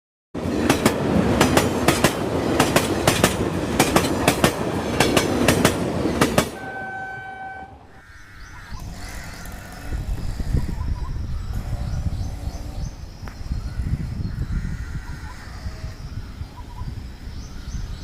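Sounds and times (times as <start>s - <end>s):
train wheels clattering over rails: 0.4s - 6.6s
train horn: 6.4s - 8.0s.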